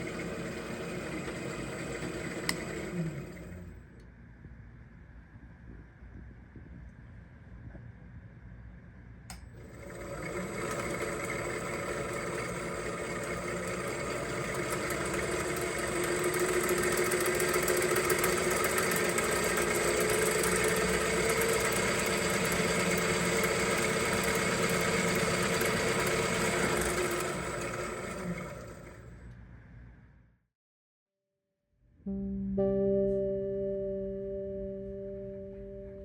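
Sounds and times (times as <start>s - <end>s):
wood lathe motor hum: 0.0s - 3.8s, 9.6s - 29.1s
lathe switch click: 2.4s - 2.7s.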